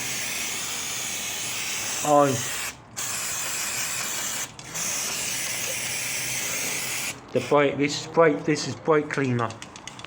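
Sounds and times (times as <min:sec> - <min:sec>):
aerosol spray can hissing: 0:00.0 - 0:07.6.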